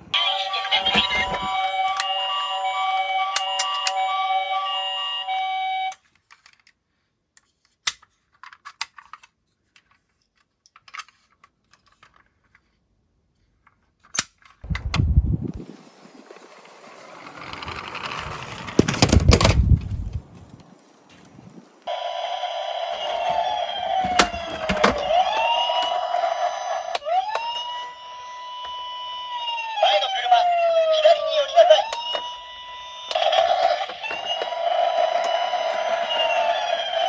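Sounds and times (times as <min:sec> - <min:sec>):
music jingle: 0:00.1 - 0:06.0
toy cars rolling down slope: 0:00.1 - 0:06.6, 0:14.7 - 0:21.2, 0:21.8 - 0:37.0.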